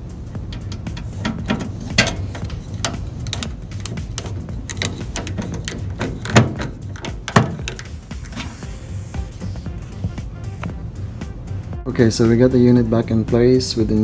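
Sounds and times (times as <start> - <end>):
background music: 0.0 - 14.0
metal parts and screws clicking: 0.4 - 8.6.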